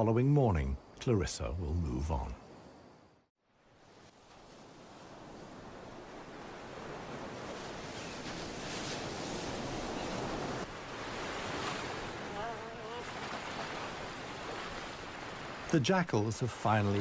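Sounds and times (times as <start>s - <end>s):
ocean surf breaking: 3.7s - 17.0s.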